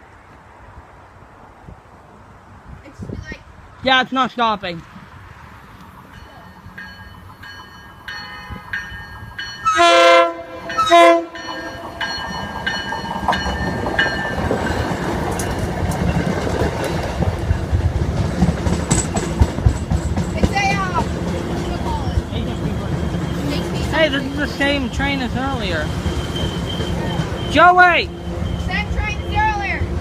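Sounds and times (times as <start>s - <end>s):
rumble and clatter of passing train: 0.0s - 30.0s
train horn blasts: 9.6s - 12.0s, 26.2s - 30.0s.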